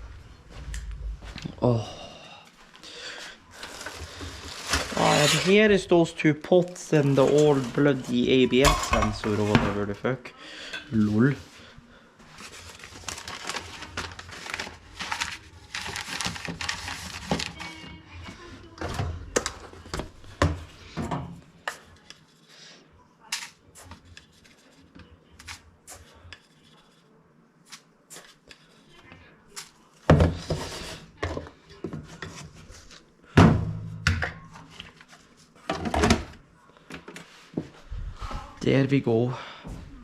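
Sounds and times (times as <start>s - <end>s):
rustling of small objects: 2.7s - 9.8s, 12.2s - 17.9s.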